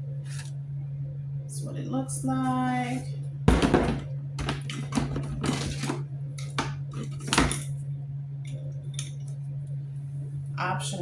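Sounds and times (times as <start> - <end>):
steady low hum: 0.0 - 11.0
plastic mop bucket clattering: 3.5 - 7.6.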